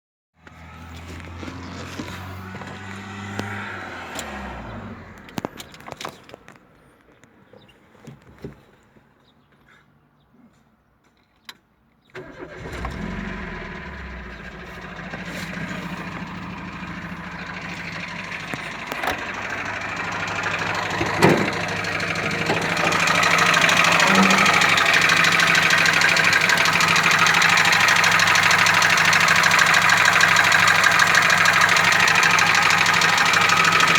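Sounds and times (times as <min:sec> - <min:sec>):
car engine running with knock: 0:14.1 - 0:33.9.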